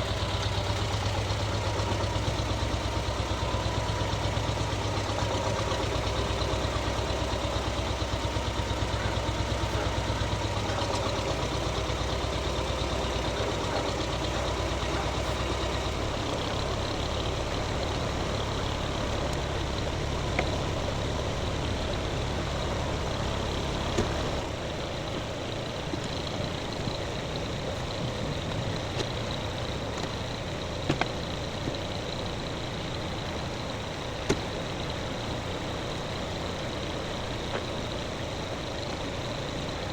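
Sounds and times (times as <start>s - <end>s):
tractor engine idling: 0.0s - 39.9s.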